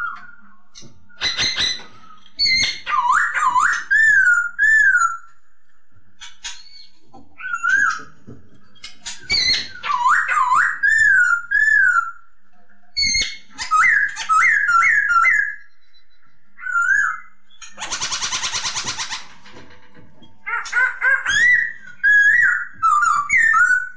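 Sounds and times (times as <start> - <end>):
bird whistling song: 0.0 - 5.4, 6.2 - 8.2, 8.8 - 12.3, 12.9 - 19.2, 20.5 - 23.9
harsh rattling bird chatter: 1.2 - 5.0, 8.7 - 12.0, 16.6 - 23.9.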